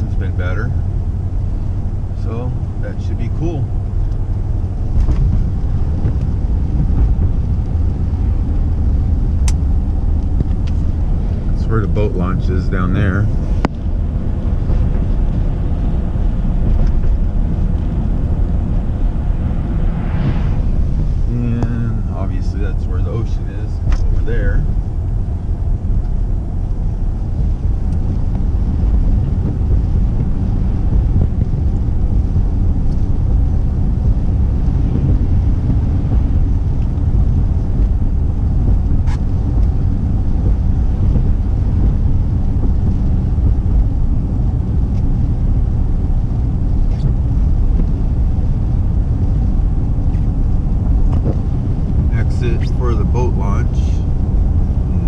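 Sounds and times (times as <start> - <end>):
car road and engine rumble: 0.0 - 55.0.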